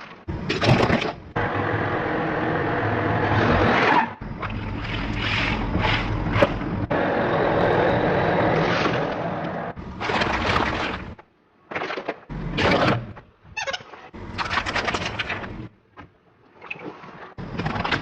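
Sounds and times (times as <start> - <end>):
car engine: 0.3 - 11.2
objects crunching under wheels: 7.7 - 11.2.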